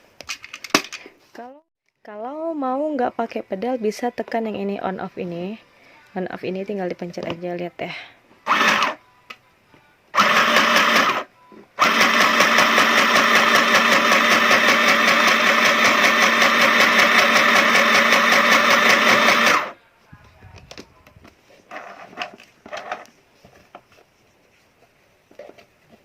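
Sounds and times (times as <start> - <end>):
electric sewing machine stitching: 8.5 - 9.0, 10.2 - 19.8.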